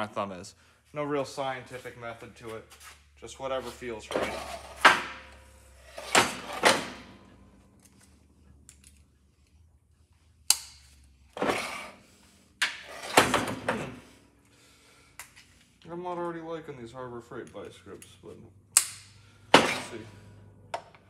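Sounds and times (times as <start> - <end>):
metal tools clanking and scraping: 4.0 - 8.2, 19.5 - 20.2.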